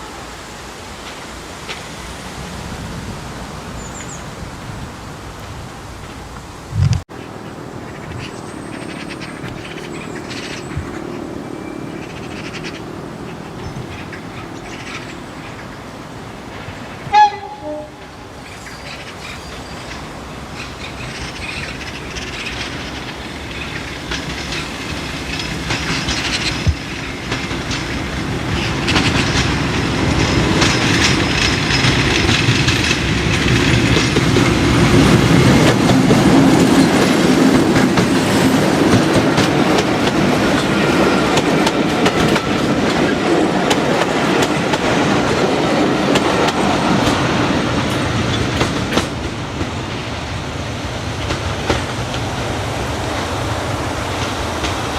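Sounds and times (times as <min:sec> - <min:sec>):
diesel locomotive engine: 0:00.0 - 0:54.9
train horn blast: 0:17.0 - 0:18.2.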